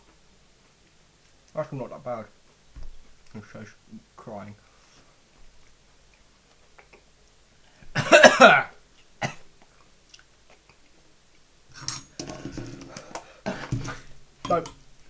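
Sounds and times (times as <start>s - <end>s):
man coughing hard: 8.0s - 9.4s, 13.4s - 14.1s.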